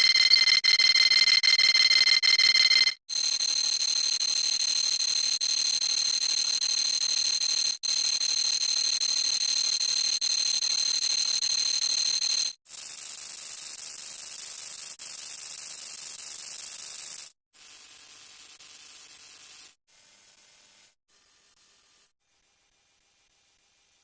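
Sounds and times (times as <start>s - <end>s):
shrill pulsing electronic alarm buzz: 0.0s - 3.0s.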